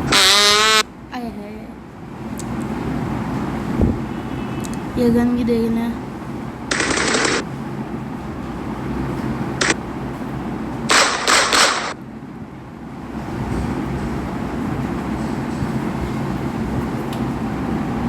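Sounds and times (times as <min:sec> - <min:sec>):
gunshot sound effects: 0:10.9 - 0:12.0.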